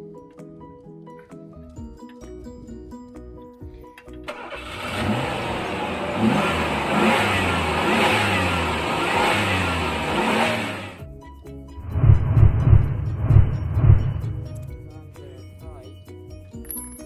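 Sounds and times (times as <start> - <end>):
engine revving: 4.3 - 11.0, 11.8 - 15.4.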